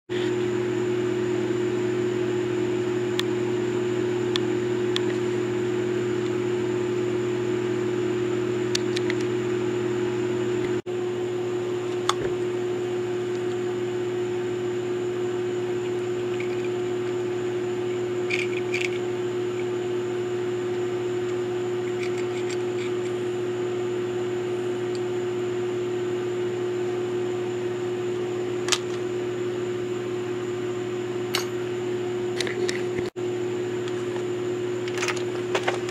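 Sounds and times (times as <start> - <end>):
electric motor humming: 0.2 - 35.9.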